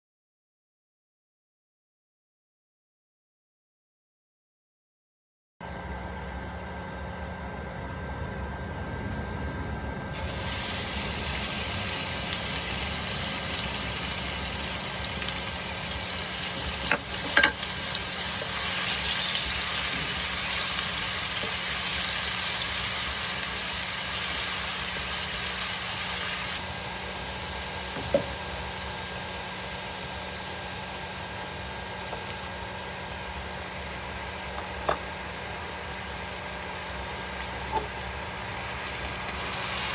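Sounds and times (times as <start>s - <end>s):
steady low hum: 5.6s - 23.5s
food sizzling in hot oil: 10.2s - 39.9s.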